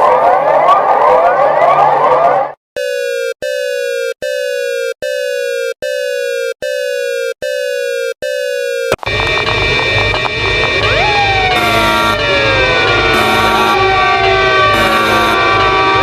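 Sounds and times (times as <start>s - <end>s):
buzzy electronic alert beeps: 2.8s - 13.9s, 14.6s - 15.7s
alarm sound: 2.8s - 16.0s.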